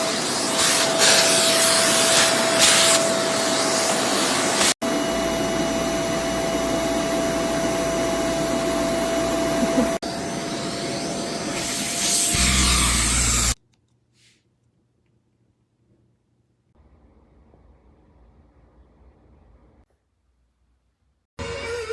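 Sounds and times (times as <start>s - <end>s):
vacuum cleaner whine: 0.0s - 13.6s.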